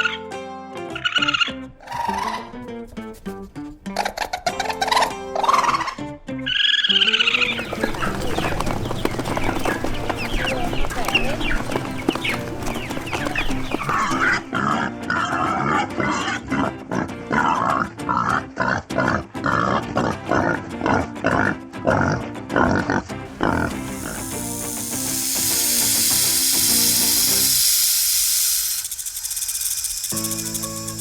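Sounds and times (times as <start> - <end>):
background music: 0.0 - 27.6
short grunting calls: 7.3 - 14.4
farm animal calls: 7.3 - 14.5, 23.3 - 27.7.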